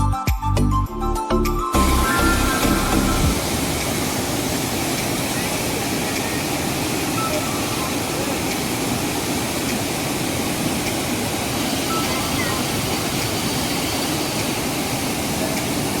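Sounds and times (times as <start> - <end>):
music jingle: 0.9 - 3.5
large waterfall roaring: 1.8 - 16.0.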